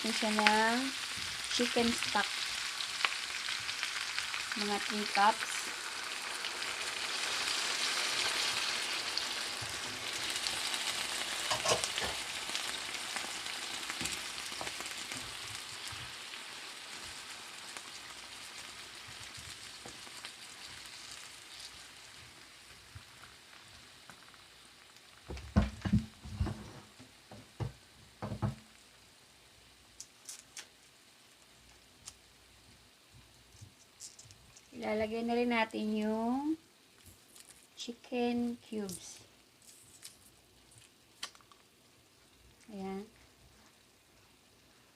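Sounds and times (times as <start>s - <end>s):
vegetables sizzling in a pan: 0.0s - 44.9s
dull knocks: 25.3s - 28.6s.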